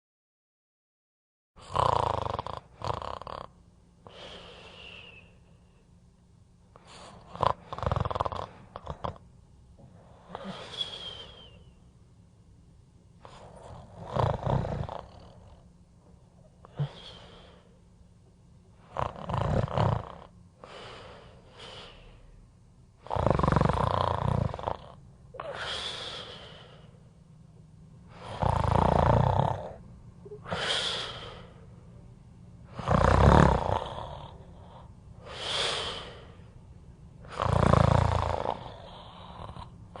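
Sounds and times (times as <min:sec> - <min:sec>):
person snoring: 0:01.6 - 0:05.4, 0:06.8 - 0:09.2, 0:09.8 - 0:11.7, 0:13.2 - 0:15.6, 0:16.6 - 0:17.7, 0:18.8 - 0:22.3, 0:23.0 - 0:27.0, 0:28.1 - 0:31.7, 0:32.7 - 0:36.5, 0:37.2 - 0:40.0.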